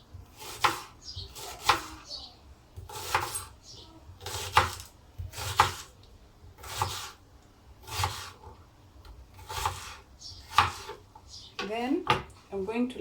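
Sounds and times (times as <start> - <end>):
knife slicing onions on a board: 0.1 - 2.1, 2.7 - 7.2, 7.8 - 11.1.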